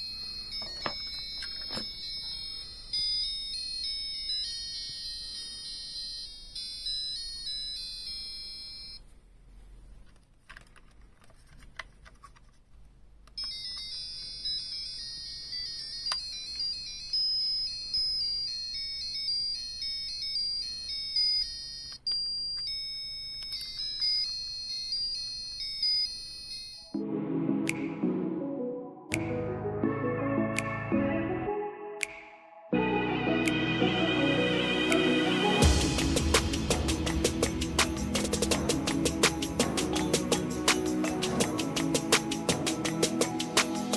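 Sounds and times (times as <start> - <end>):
door chime beeping melody: 0.0 - 9.0, 13.4 - 27.0.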